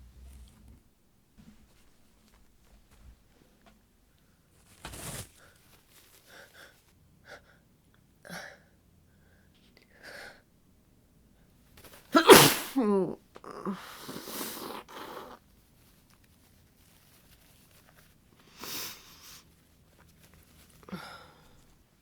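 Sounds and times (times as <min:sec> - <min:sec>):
person sneezing: 0:12.2 - 0:13.1.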